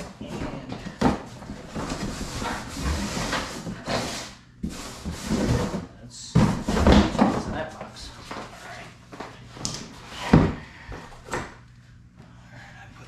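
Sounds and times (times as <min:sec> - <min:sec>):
cardboard rustling and scraping: 0:00.2 - 0:07.6.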